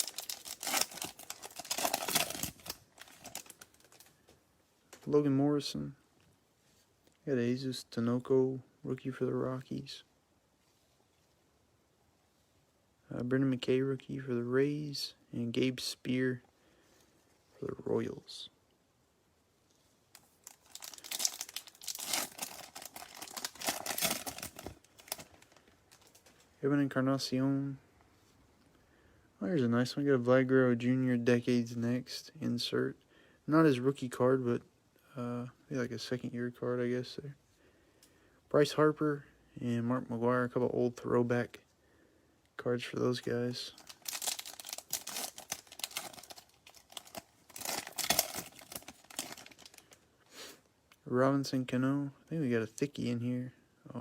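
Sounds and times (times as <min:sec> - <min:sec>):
wrapper tearing and crinkling: 0:00.0 - 0:04.1, 0:20.2 - 0:26.4, 0:43.7 - 0:50.0.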